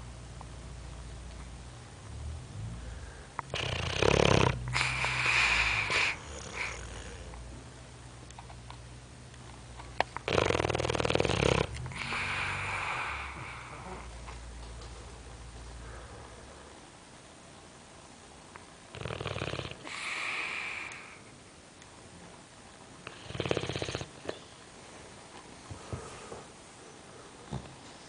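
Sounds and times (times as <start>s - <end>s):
dog snoring: 3.5s - 7.4s, 10.2s - 14.2s, 18.9s - 20.9s, 23.0s - 24.4s.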